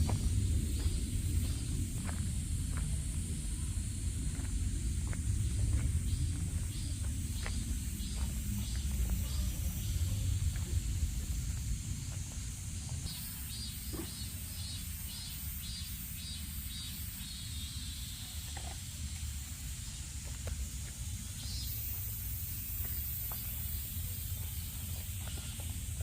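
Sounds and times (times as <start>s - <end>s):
low rumble: 0.0s - 13.1s
high-pitched hiss: 0.0s - 26.0s.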